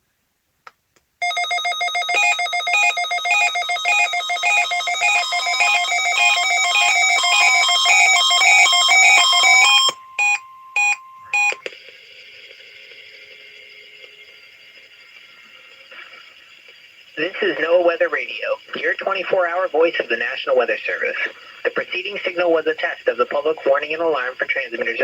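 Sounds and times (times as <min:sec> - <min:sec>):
warbling electronic data tones: 0:01.2 - 0:11.6
faint steady tone: 0:09.6 - 0:11.7.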